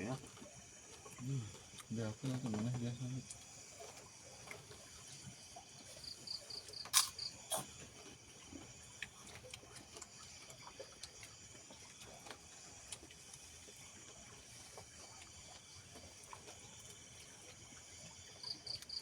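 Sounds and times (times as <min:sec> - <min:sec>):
insect chorus chirring: 0:04.9 - 0:08.0, 0:18.2 - 0:19.0.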